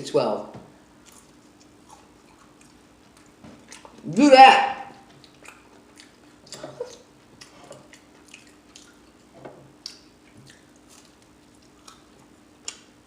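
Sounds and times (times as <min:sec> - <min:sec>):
chewing clicks: 0:05.1 - 0:12.9
wet lip smacks: 0:05.2 - 0:09.2, 0:09.8 - 0:12.1.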